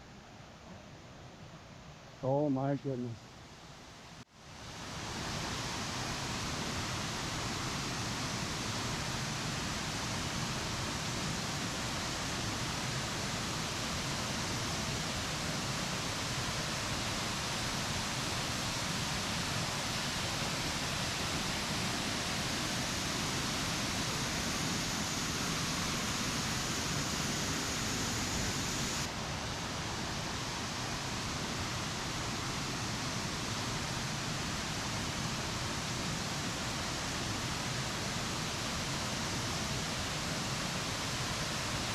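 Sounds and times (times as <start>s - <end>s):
waterfall rushing: 12.3s - 41.9s.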